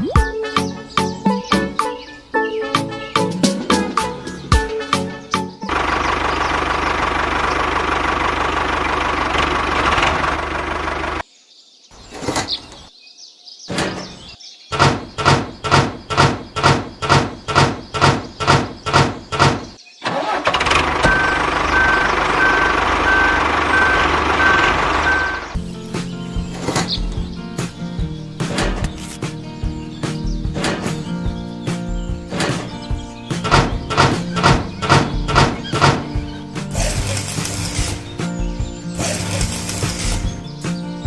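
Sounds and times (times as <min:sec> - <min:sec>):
vehicle engine running: 0:05.7 - 0:11.2, 0:20.7 - 0:26.6, 0:33.8 - 0:40.5
evenly spaced knocks: 0:13.7 - 0:19.8, 0:33.4 - 0:36.1
on-off beeping: 0:21.0 - 0:25.5.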